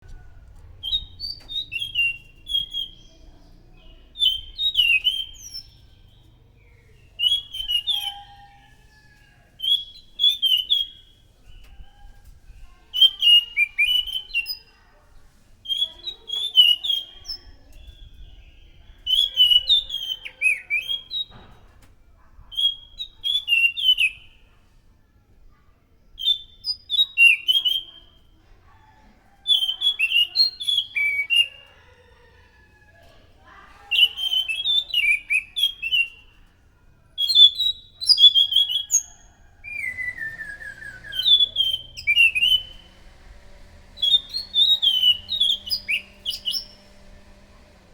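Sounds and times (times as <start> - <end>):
thrush singing whistled phrases: 0.8 - 3.2, 4.2 - 5.8, 7.2 - 8.7, 9.6 - 11.1, 12.9 - 14.7, 15.6 - 17.4, 19.0 - 21.3, 29.5 - 31.6, 33.9 - 36.3, 37.2 - 47.5.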